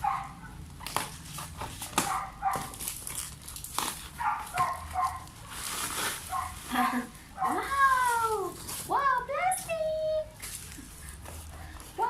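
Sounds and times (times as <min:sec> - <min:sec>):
plastic packaging crackling: 0:00.7 - 0:09.2.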